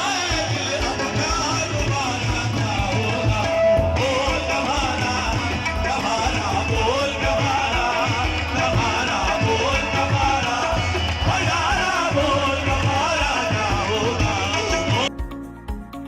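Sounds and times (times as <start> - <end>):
steady drum beat: 0.0 - 16.0.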